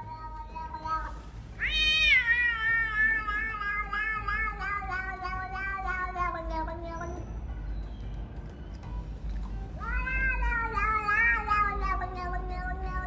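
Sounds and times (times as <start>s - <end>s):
cat meowing: 0.0s - 7.2s, 9.8s - 13.0s.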